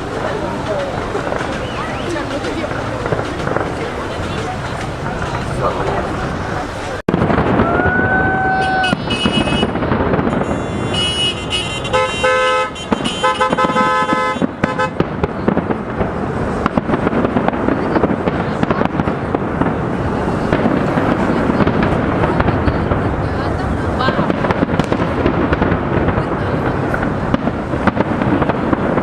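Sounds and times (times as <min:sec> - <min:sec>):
fireworks crackling and bursting: 0:00.0 - 0:29.0
horns honking: 0:08.5 - 0:15.0.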